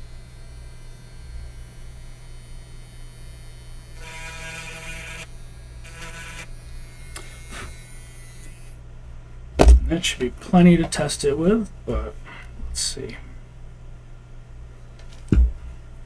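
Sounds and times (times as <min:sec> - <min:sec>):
grinding pen motor whine: 0:00.0 - 0:08.8
mains hum: 0:00.0 - 0:16.0.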